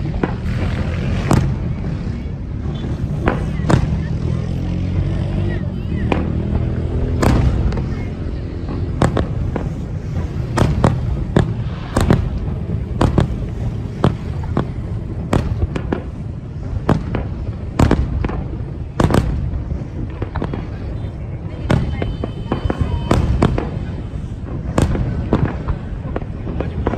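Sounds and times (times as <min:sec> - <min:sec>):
fireworks exploding: 0:00.0 - 0:26.9
steady low rumble: 0:00.0 - 0:26.9.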